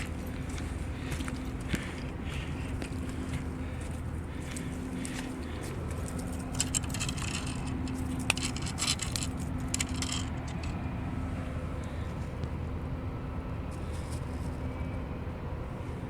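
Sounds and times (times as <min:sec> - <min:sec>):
low motor hum: 0:00.0 - 0:16.0
light clinks and rattles: 0:04.5 - 0:10.9.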